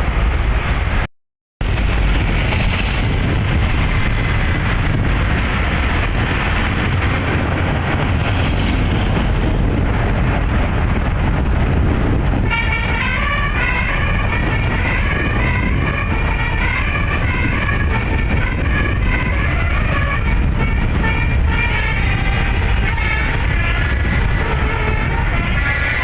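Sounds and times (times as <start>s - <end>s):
bus and road traffic rumble: 0.0s - 26.0s
multi-tone air horn melody: 12.4s - 26.0s.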